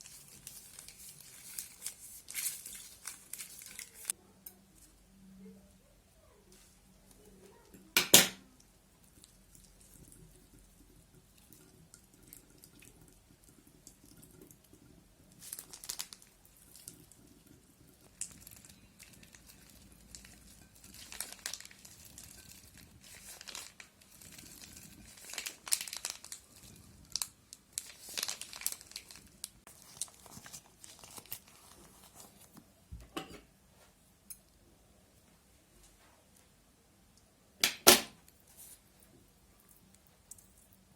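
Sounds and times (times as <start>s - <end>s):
plastic bags crinkling: 0.0s - 4.2s, 15.4s - 16.3s, 18.2s - 32.5s.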